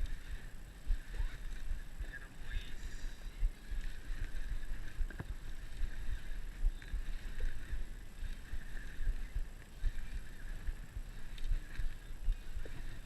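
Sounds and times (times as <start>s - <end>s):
faint high whine: 0.0s - 13.0s
water slapping against boat hull: 3.4s - 13.0s.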